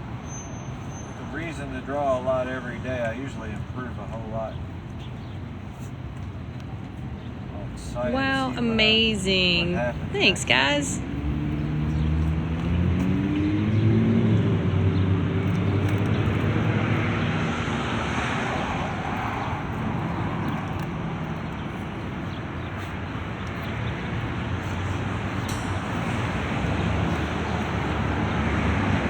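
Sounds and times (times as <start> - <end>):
road noise from passing cars: 0.0 - 29.0
vehicle engine pulling away: 11.0 - 29.0.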